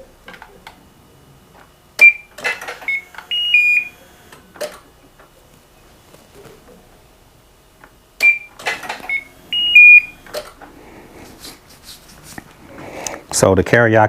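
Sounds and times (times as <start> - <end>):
short high electronic beeps: 2.0 - 4.0, 8.2 - 10.2.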